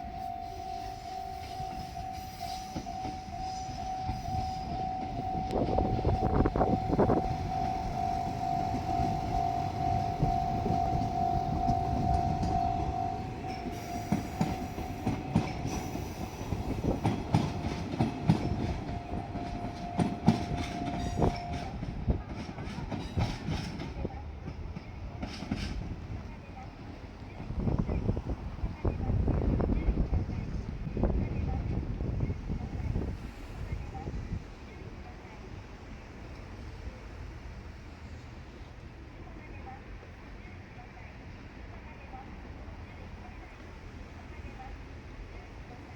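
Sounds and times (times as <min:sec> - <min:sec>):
level crossing bell ringing: 0:00.0 - 0:16.0
diesel train engine rumble: 0:00.0 - 0:45.9
wheels clacking over rail joints: 0:01.6 - 0:27.6.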